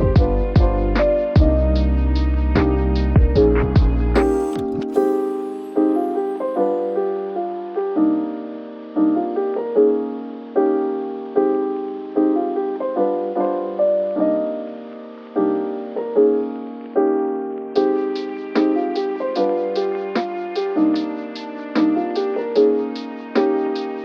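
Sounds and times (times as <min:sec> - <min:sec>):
soft electric piano chords: 0:00.0 - 0:24.0.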